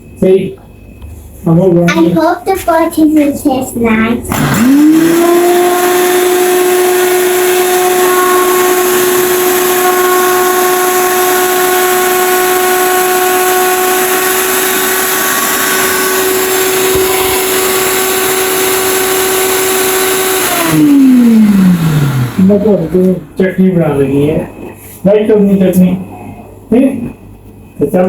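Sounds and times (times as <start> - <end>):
blender motor running: 4.3 - 23.5.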